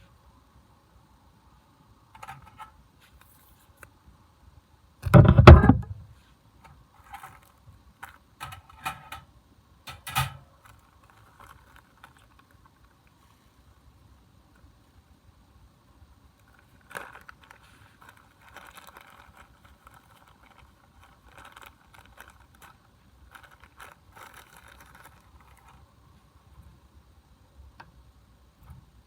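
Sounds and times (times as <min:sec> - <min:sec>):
handling clicks and rustles: 0:02.1 - 0:03.9, 0:06.6 - 0:09.3, 0:09.9 - 0:13.2, 0:16.4 - 0:25.8.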